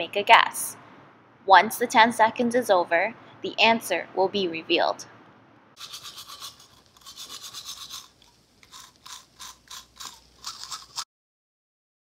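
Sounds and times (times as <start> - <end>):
rapid rhythmic scrubbing: 5.8 - 11.0.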